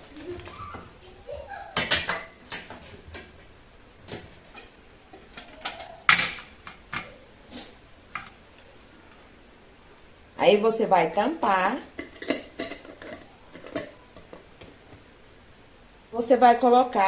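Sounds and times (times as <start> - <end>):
clicks and knocks of objects: 12.0 - 15.0.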